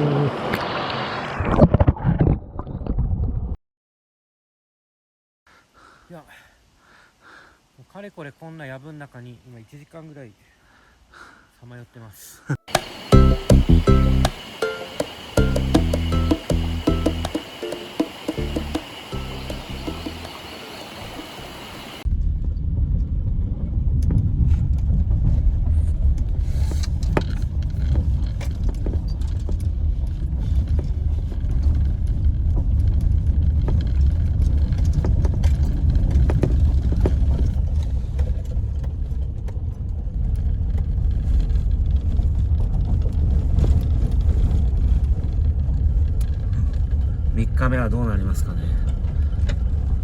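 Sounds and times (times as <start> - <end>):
car engine and road noise: 12.7 - 22.0
background music: 12.8 - 20.4.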